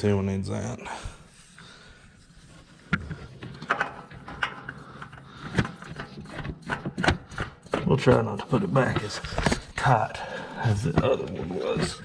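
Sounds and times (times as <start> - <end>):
clicks and knocks of metal parts: 2.9 - 8.2.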